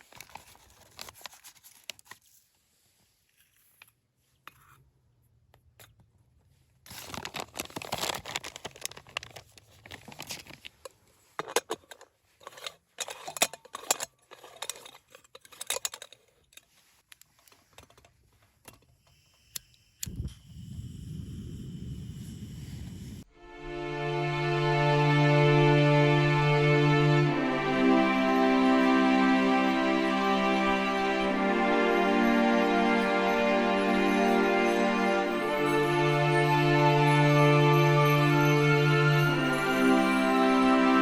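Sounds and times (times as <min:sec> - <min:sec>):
rustling and crinkling objects: 0:00.0 - 0:05.0, 0:05.6 - 0:19.0.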